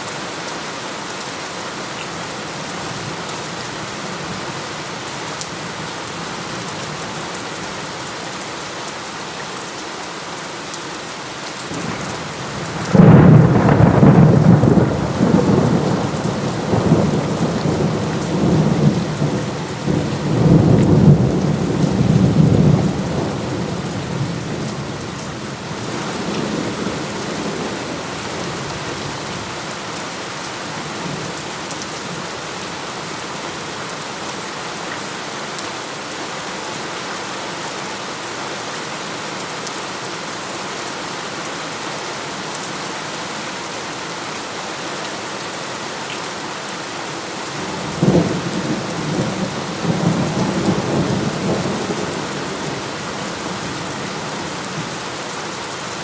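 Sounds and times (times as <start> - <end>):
heavy rain falling: 0.0 - 56.0
rolling thunder: 11.8 - 24.6.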